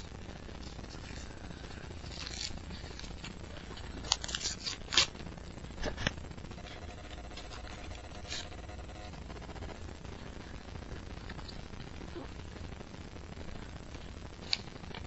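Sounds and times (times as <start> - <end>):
paper and card rustling and tearing: 0.6 - 5.2, 7.4 - 8.6.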